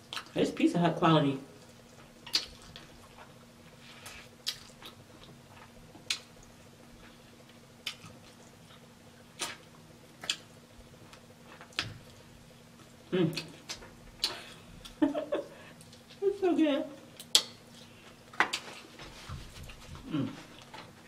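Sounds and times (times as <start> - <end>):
person chewing chicken wings: 1.9 - 3.3, 4.0 - 6.3
mouth smacks and crunches: 2.3 - 2.9, 4.0 - 5.0.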